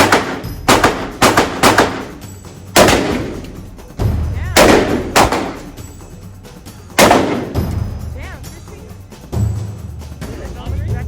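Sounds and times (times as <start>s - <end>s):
gunshots: 0.0s - 3.6s, 4.5s - 5.8s, 7.0s - 7.8s.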